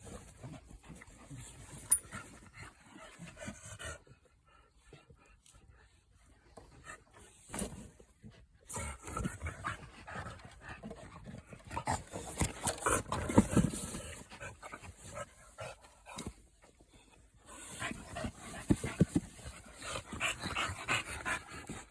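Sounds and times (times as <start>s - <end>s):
puppy panting: 17.7s - 21.9s.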